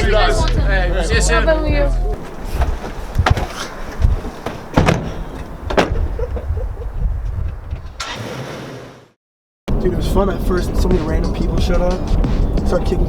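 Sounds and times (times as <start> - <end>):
car doors opening and shutting: 2.2 - 6.5, 7.5 - 9.1.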